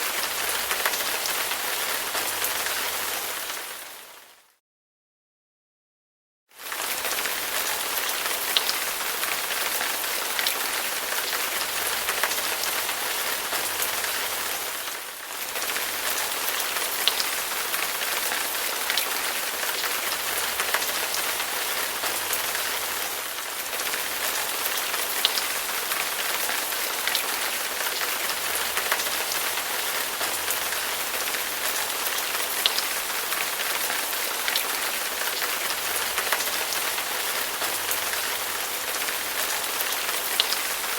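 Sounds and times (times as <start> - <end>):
heavy rain: 0.0 - 4.4, 6.6 - 40.9.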